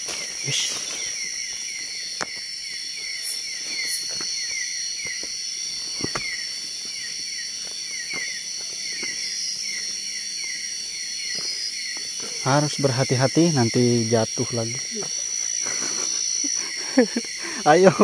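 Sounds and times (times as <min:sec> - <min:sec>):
insects trilling: 0:00.0 - 0:18.0.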